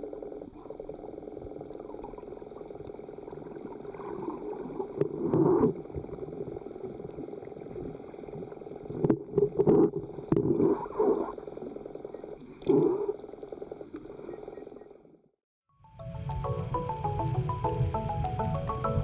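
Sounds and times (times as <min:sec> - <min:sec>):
muffled underwater gurgling: 0:00.0 - 0:15.2.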